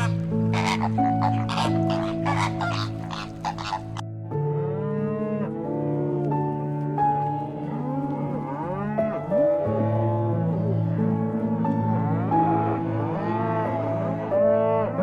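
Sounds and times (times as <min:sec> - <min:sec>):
animal calls gliding: 0:00.0 - 0:04.0.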